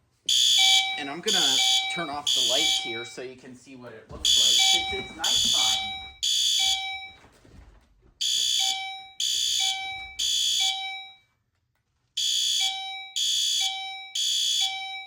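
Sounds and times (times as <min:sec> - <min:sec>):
fire alarm horn blasts: 0:00.3 - 0:03.2, 0:04.2 - 0:07.2, 0:08.2 - 0:11.2, 0:12.2 - 0:15.0.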